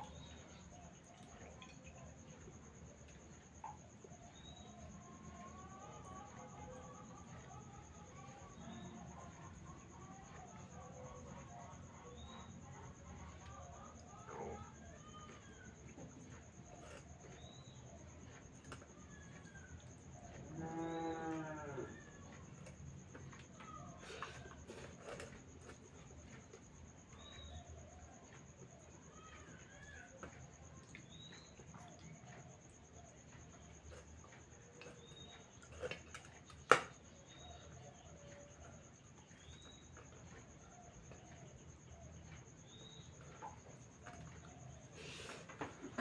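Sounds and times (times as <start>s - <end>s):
cow mooing: 20.4s - 22.0s.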